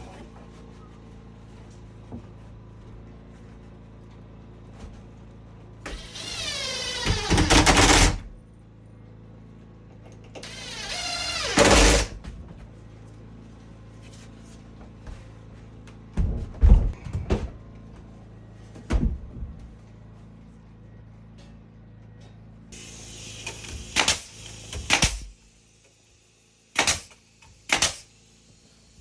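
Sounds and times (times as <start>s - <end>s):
power drill running: 5.9s - 8.2s, 10.4s - 12.2s, 22.8s - 29.0s.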